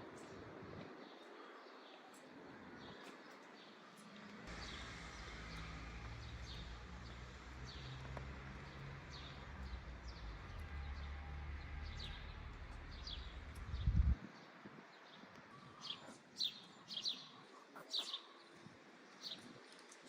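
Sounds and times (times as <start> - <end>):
steady low rumble: 9.1 - 14.2.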